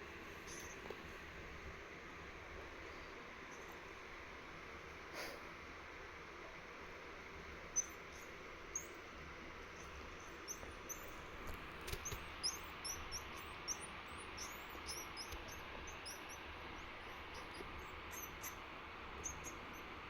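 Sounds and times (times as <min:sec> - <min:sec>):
marmoset chirping: 0:00.5 - 0:00.9, 0:07.5 - 0:20.0
sharp click: 0:11.5 - 0:12.6.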